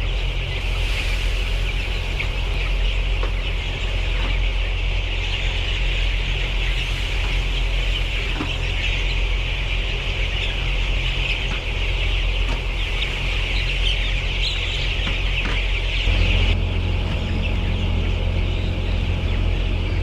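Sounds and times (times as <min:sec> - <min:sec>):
flock of chickens clucking: 0:00.0 - 0:20.0
steady low hum: 0:00.0 - 0:20.0.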